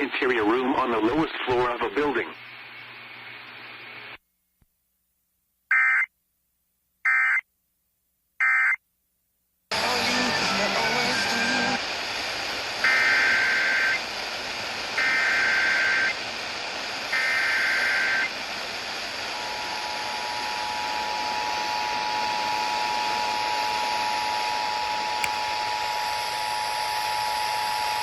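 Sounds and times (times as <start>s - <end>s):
static hiss: 0.0s - 4.2s, 9.8s - 19.4s, 24.9s - 25.7s.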